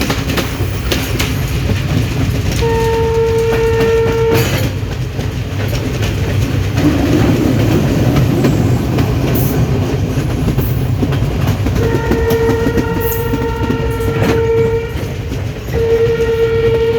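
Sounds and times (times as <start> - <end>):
train rumbling with wheel clatter: 0.0 - 16.9
train horn blast: 2.6 - 4.8, 11.8 - 16.9.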